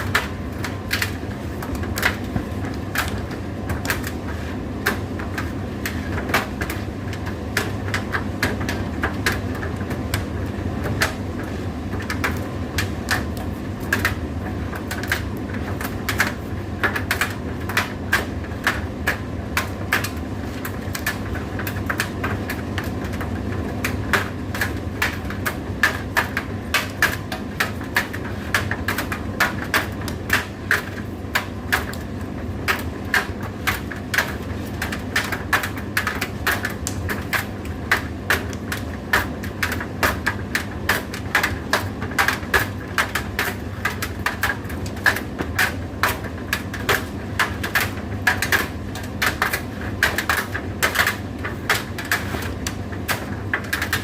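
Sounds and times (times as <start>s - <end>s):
tumble dryer motor hum: 0.0s - 54.0s.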